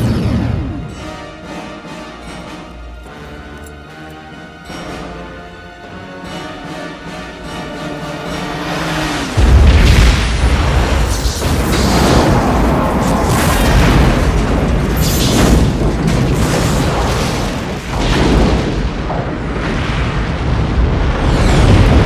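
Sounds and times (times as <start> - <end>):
long explosion with deep rumble: 0.0 - 1.1, 9.3 - 22.0
loud explosion booms: 0.0 - 1.2, 9.2 - 22.0
film score music: 0.0 - 22.0.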